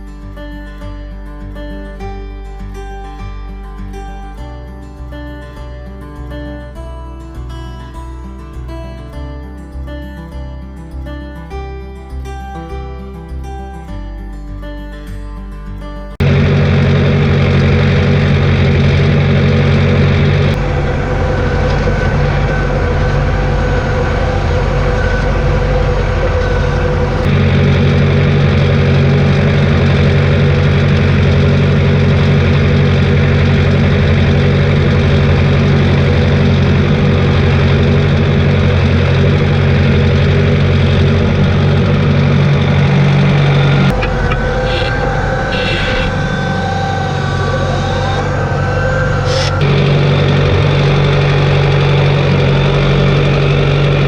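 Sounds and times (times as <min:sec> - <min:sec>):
tractor engine under load: 0:16.2 - 0:54.0.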